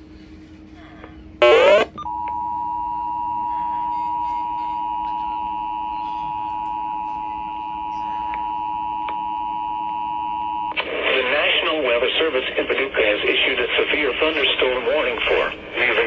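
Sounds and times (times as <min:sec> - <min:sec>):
two-tone alert signal: 0:01.4 - 0:02.1.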